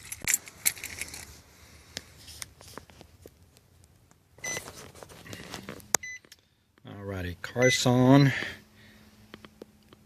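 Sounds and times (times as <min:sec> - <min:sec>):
small clicks and handling noise: 0:00.0 - 0:06.9.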